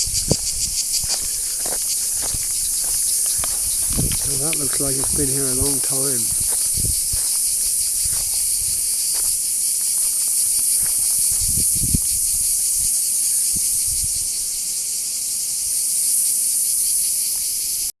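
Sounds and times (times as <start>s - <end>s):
soft low thumps: 0.0s - 8.9s
cicadas buzzing: 0.0s - 17.9s.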